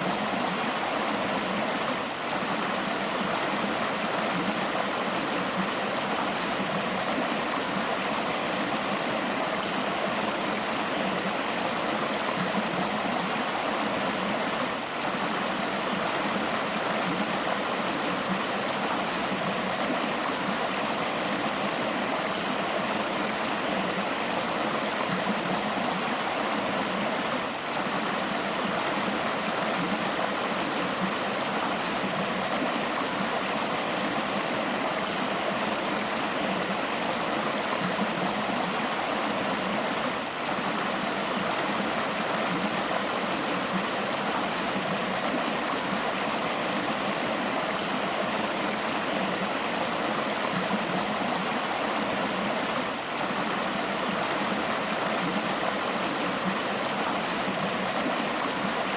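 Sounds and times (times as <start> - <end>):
river flowing: 0.0 - 58.9.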